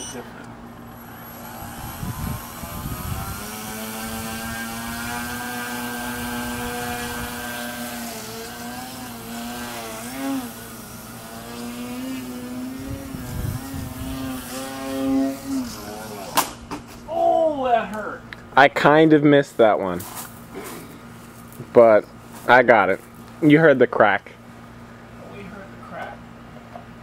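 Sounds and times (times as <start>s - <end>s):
rc airplane motor whining: 0.8s - 16.4s.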